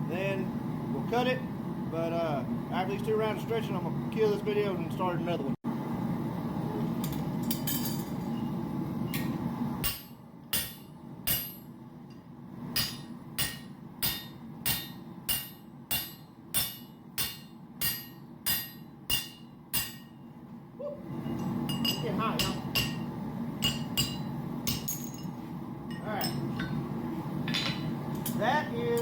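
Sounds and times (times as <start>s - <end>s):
hammer striking metal on anvil: 9.2s - 11.7s, 12.7s - 20.3s, 21.7s - 25.3s.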